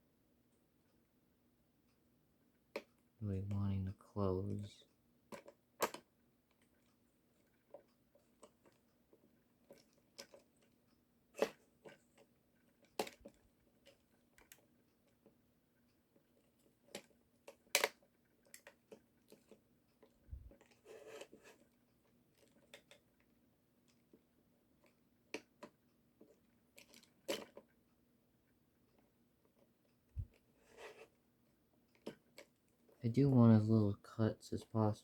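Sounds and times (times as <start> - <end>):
sharp plastic snaps: 16.9 - 18.7
plastic parts clicking: 16.9 - 19.5.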